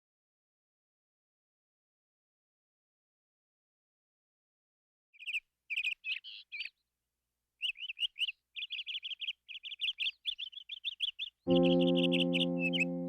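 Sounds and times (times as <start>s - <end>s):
bird singing whistles: 7.6s - 13.0s.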